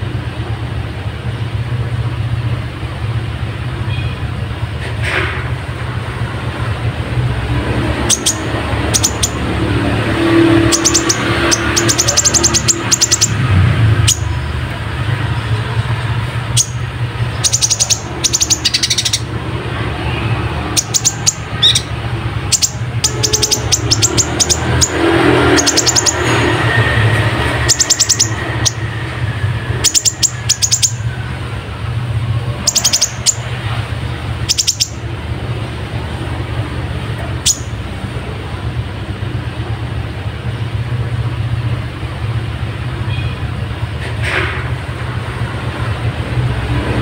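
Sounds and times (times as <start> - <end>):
bird singing high chirps: 7.9 - 14.5, 16.4 - 31.2, 32.5 - 33.5, 34.4 - 35.0, 37.4 - 37.8.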